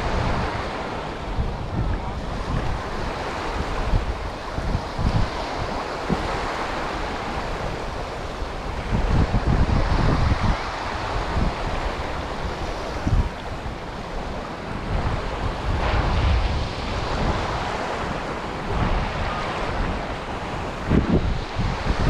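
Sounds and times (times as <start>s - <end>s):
sea surf washing on beach: 0.0s - 22.0s
wind buffeting microphone: 0.0s - 22.0s.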